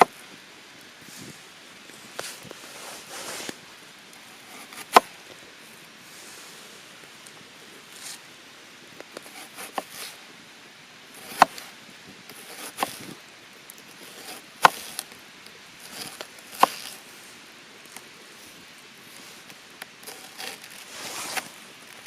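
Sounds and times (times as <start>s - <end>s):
mountain stream hiss: 0.0s - 22.0s
wood being chopped: 11.2s - 11.6s, 14.2s - 15.0s, 15.9s - 16.9s.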